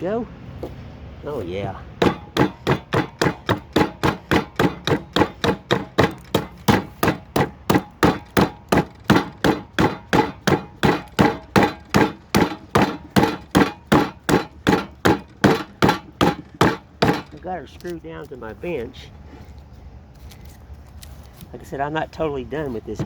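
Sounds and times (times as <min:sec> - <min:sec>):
hatchet chopping wood: 0:02.0 - 0:17.6.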